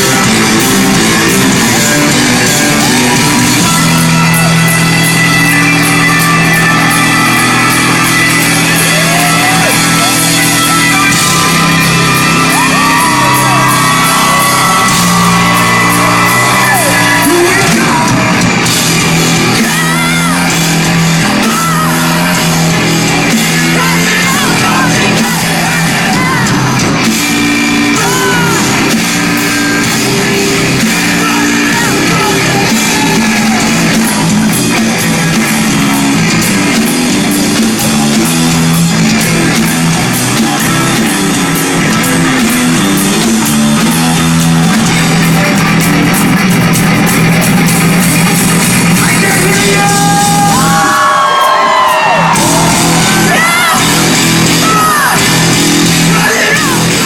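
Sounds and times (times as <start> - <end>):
bass guitar: 0.0 - 57.0
distorted electric guitars: 0.0 - 57.0
drums: 0.0 - 57.0
shouted sung vocals: 55.9 - 57.0.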